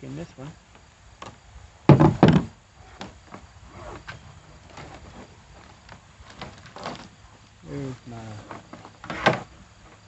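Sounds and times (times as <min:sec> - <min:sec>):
loud knocks: 0:01.9 - 0:02.6.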